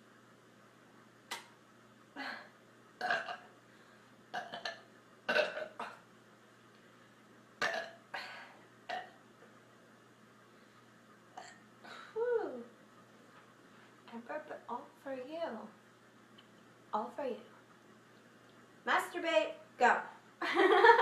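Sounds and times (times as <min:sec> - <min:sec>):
woman burping: 0:02.2 - 0:03.5, 0:04.3 - 0:06.0, 0:07.6 - 0:09.2, 0:11.4 - 0:12.2.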